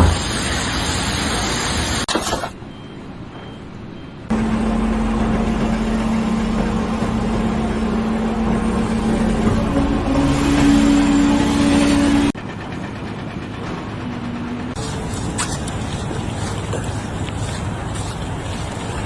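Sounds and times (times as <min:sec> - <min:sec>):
higher steady tone: 0:04.3 - 0:12.4
engine running steadily: 0:04.3 - 0:19.0.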